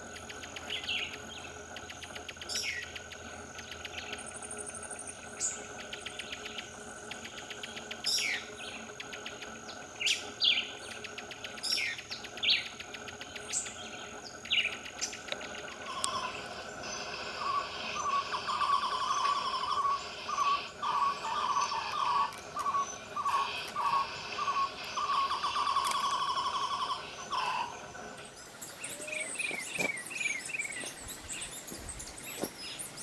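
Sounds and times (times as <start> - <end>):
thin high whine: 0.0 - 33.0
fast ticking trill: 10.6 - 28.7
bird downward-sliding call: 15.8 - 27.9.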